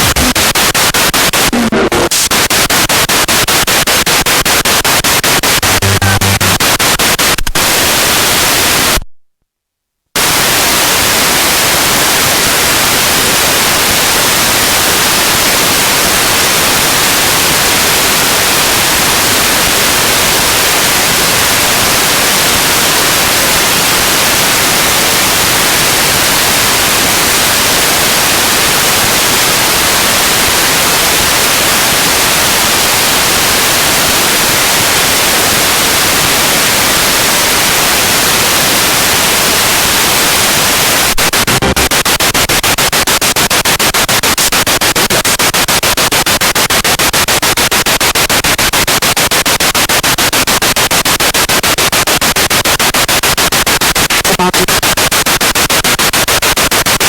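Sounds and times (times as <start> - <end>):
radio fast chopping pulses: 0.0 - 2.9, 3.5 - 7.7, 41.0 - 42.6, 54.2 - 54.8
radio static: 0.0 - 9.0, 40.2 - 45.5, 53.9 - 55.4.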